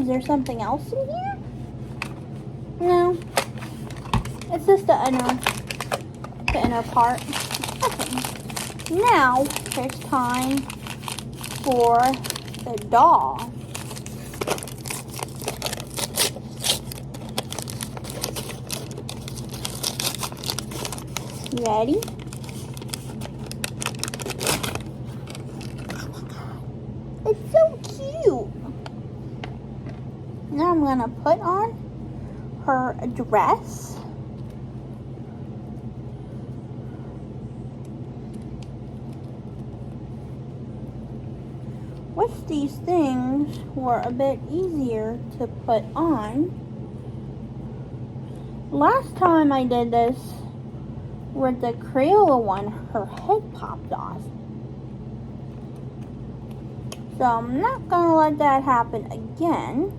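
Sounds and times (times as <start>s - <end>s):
steady low hum: 0.0s - 59.9s
plastic packaging clicks and crinkles: 3.2s - 26.1s.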